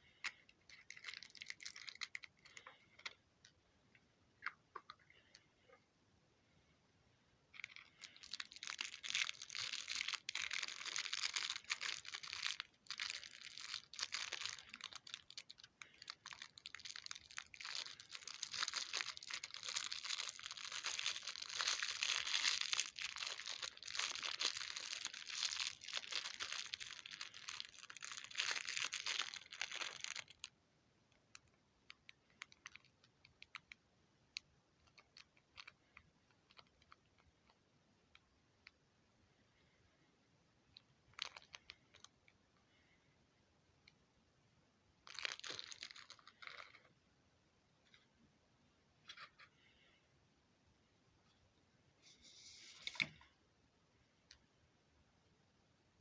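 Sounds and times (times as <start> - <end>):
foil wrapper crinkling: 0.2 - 3.2, 7.6 - 30.5, 41.1 - 42.1, 45.0 - 46.9.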